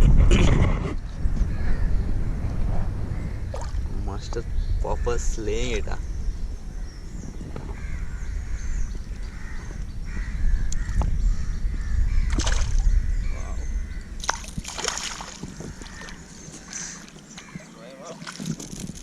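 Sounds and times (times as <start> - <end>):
low rumble: 0.0 - 17.0
harsh bird calls: 3.0 - 18.2.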